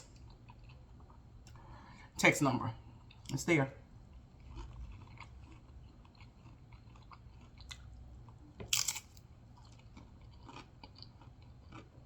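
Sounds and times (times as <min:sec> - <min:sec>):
chewing chips: 0:04.1 - 0:12.0
loud chip crunch: 0:08.7 - 0:11.9.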